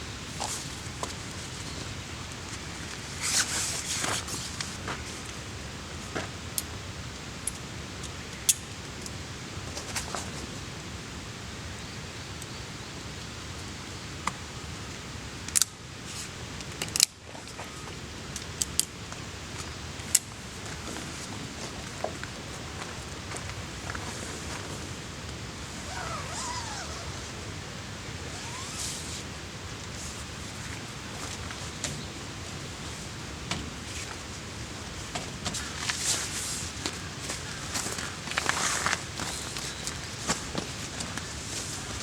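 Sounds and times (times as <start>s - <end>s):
steady outdoor hiss: 0.0s - 42.0s
light rustling: 20.6s - 42.0s.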